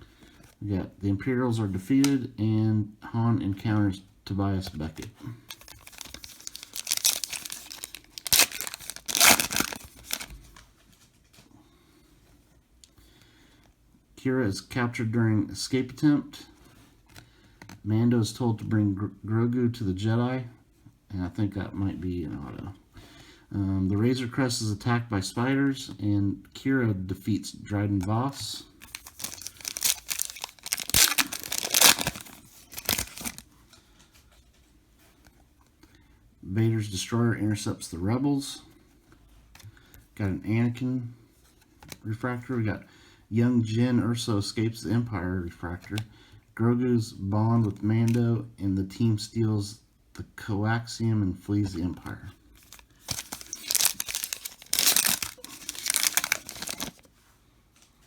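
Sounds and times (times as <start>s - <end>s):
foil wrapper tearing and crinkling: 5.5s - 10.4s, 28.8s - 33.4s, 52.6s - 57.1s.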